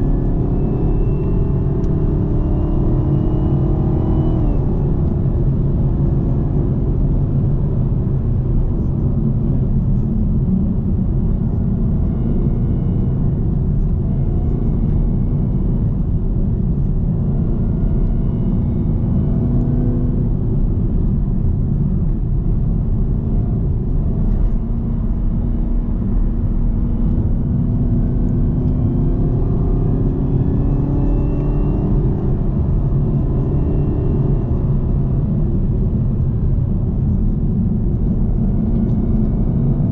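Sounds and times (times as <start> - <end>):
car engine under way: 0.0 - 39.9
supercharger whine: 0.0 - 39.9.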